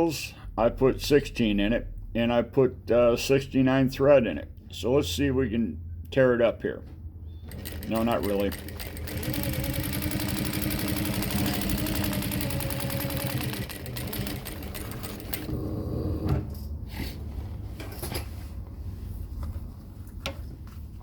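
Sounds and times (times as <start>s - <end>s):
motor hum: 7.3s - 15.6s
sewing machine stitching leather: 7.4s - 15.5s.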